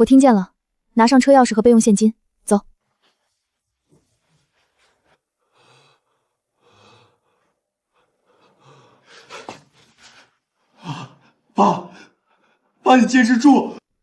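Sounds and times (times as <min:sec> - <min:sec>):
person breathing hard with gasps: 0:05.4 - 0:12.7.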